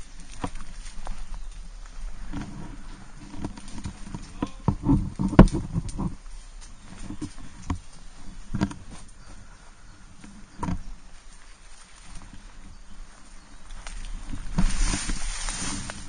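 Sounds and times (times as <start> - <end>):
footstep-like thuds and clicks: 0.2 - 9.3, 10.2 - 12.5.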